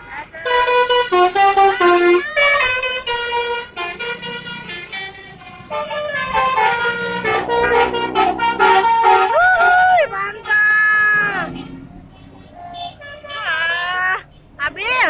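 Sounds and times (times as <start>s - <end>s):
musical air horn playing tune: 0.4s - 11.8s.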